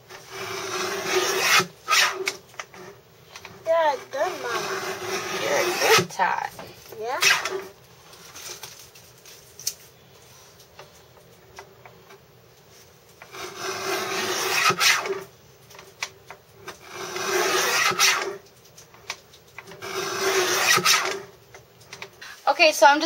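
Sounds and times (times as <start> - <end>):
scissors cutting paper: 3.9 - 6.4.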